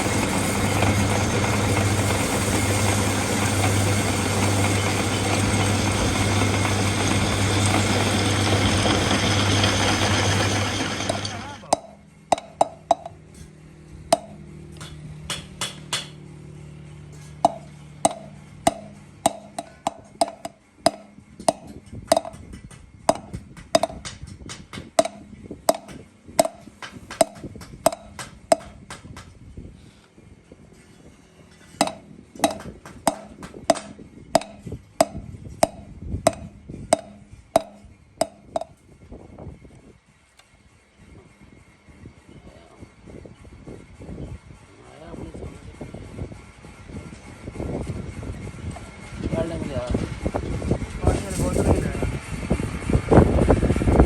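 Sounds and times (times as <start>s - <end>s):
steady machine hum: 0.0s - 54.0s
hammer blows on metal: 17.2s - 29.3s, 31.6s - 38.8s.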